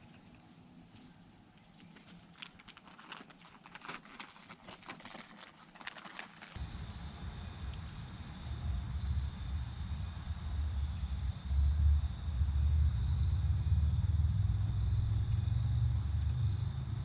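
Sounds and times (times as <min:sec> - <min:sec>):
small animals foraging and scratching: 0:00.0 - 0:06.6
low rumble: 0:06.6 - 0:17.0.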